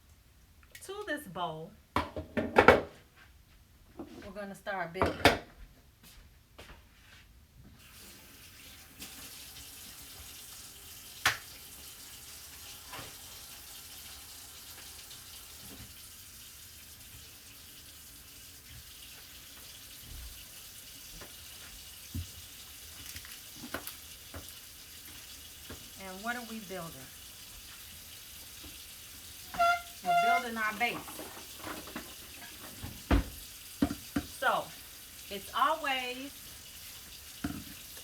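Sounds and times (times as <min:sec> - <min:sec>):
tap running into sink: 0:11.2 - 0:16.1, 0:18.6 - 0:25.9, 0:28.6 - 0:34.4, 0:37.4 - 0:38.0.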